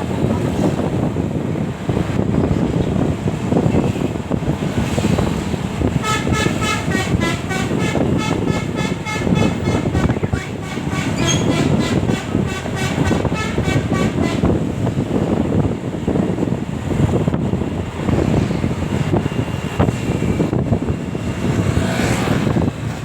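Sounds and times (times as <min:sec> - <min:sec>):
low rumble of traffic: 0:00.0 - 0:23.0
wind: 0:00.0 - 0:23.0
bus horn playing pulsing tune: 0:05.8 - 0:15.1.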